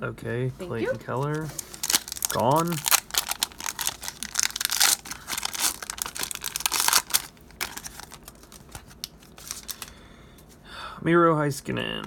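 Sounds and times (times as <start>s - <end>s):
foil wrapper crinkling: 0.8s - 10.0s.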